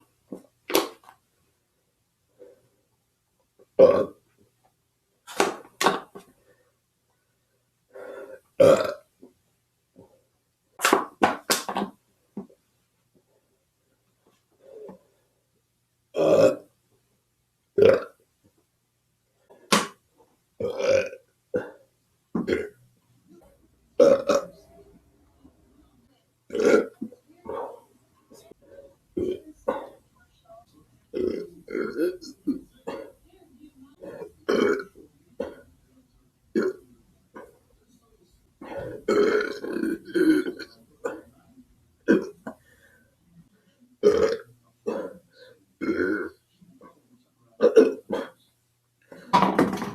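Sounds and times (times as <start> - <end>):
person belching: 3.8 - 4.2, 8.6 - 9.1, 16.2 - 16.7, 17.8 - 18.2, 20.6 - 21.8, 22.4 - 22.8, 24.0 - 24.6, 26.5 - 27.1, 29.2 - 29.9, 31.1 - 33.1, 34.0 - 35.6, 36.6 - 36.8, 38.9 - 41.2, 42.1 - 42.6, 44.0 - 45.2, 45.8 - 46.4, 47.6 - 48.4.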